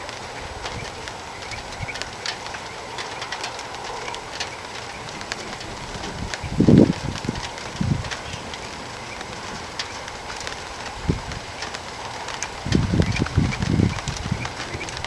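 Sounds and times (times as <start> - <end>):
light ticks: 0.0 - 15.0
steady hiss of rain: 0.0 - 15.0.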